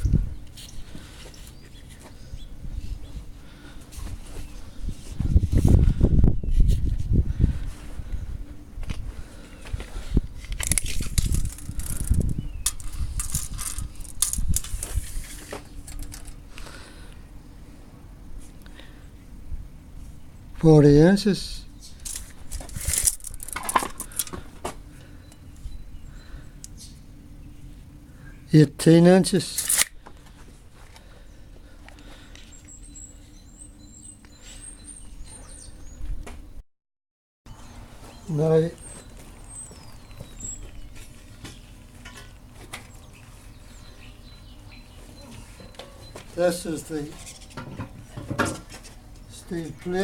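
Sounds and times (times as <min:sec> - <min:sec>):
small birds chirping: 0:00.0 - 0:03.7, 0:10.6 - 0:14.6, 0:21.2 - 0:24.2, 0:24.8 - 0:28.6, 0:31.2 - 0:36.2, 0:37.5 - 0:47.6
handling clicks and knocks: 0:10.5 - 0:16.4, 0:22.0 - 0:24.5.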